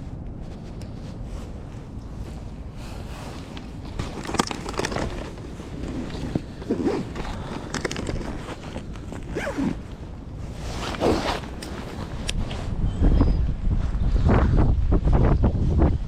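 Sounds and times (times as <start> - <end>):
wind buffeting microphone: 0.0 - 16.0
rasping handling noises: 3.0 - 12.5.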